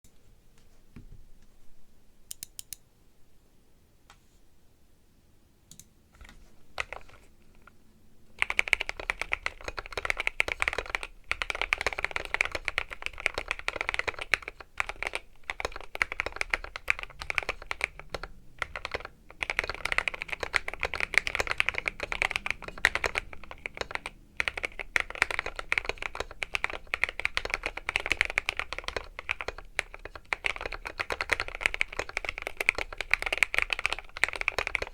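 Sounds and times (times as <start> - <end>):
mechanical keyboard typing: 6.8 - 7.3, 8.3 - 34.9.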